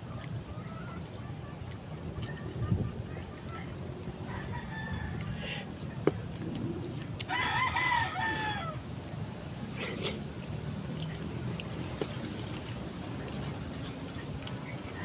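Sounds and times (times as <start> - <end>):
rooster crowing: 7.3 - 8.8.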